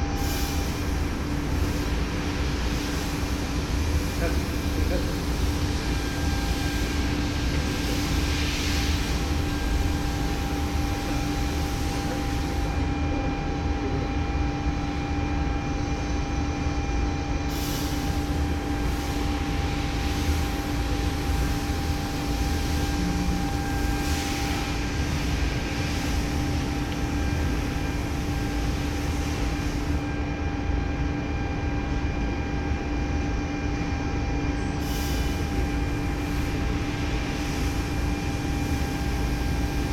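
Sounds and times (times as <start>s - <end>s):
milling machine humming: 0.8s - 30.7s.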